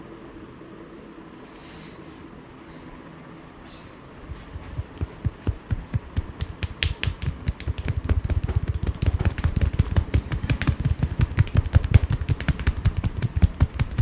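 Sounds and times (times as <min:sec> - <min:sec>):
hands slapping body: 0:04.3 - 0:14.0.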